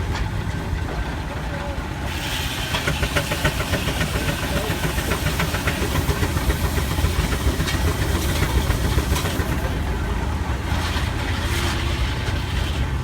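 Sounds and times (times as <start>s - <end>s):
steam engine exhaust chuffs: 0.0s - 13.0s
steam hiss: 2.0s - 9.8s.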